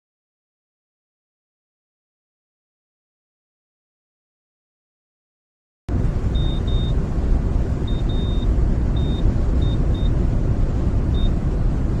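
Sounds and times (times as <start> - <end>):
loud low rumble: 5.9 - 12.0
short high-pitched beeps: 6.3 - 7.0, 7.9 - 10.2, 11.2 - 11.4.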